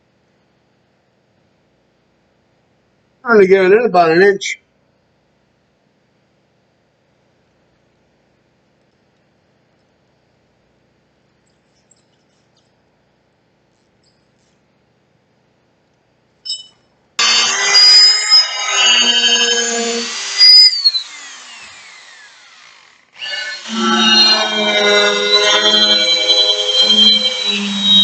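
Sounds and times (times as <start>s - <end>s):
drill motor winding down: 17.2s - 28.0s
hammer drill boring: 17.2s - 28.0s.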